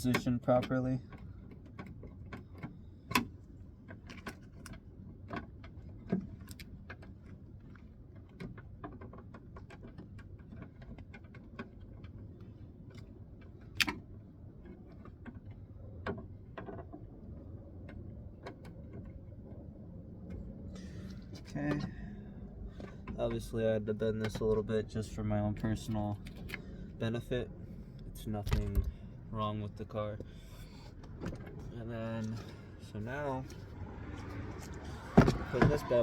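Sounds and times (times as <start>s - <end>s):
low steady hum: 11.6s - 36.0s.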